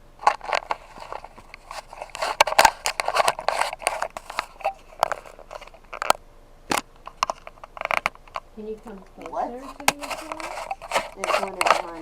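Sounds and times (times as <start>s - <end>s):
short scraping rustles: 9.6s - 12.0s.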